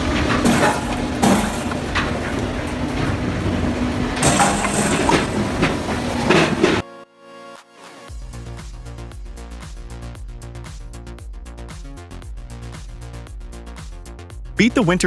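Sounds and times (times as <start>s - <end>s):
machine hum: 0.0s - 6.8s
wood knocking and clattering: 4.2s - 6.8s.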